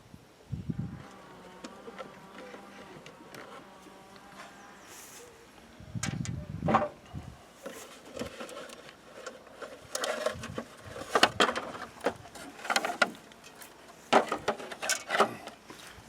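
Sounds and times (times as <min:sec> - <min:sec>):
metal clanks and rattles: 0:08.0 - 0:15.5.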